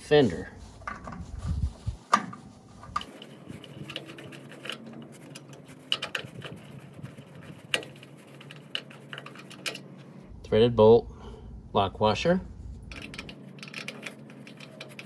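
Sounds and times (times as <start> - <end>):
metal parts clicking: 7.7 - 9.9, 12.9 - 15.0.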